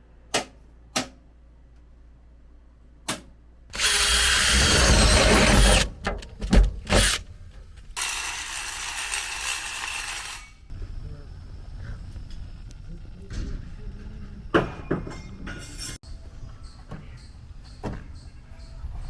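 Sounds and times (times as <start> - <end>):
power drill driving screws: 3.7 - 6.0, 6.9 - 7.2, 8.0 - 10.6.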